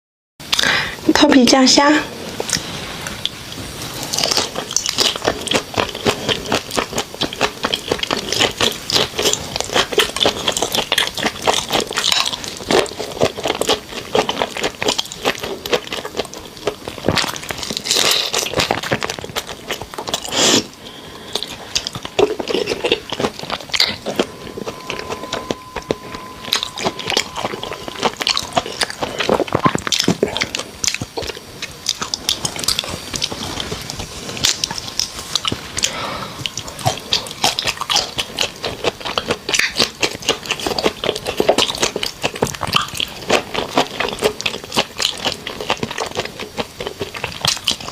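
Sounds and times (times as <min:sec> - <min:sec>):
wet crunching and chewing: 0:02.2 - 0:47.9.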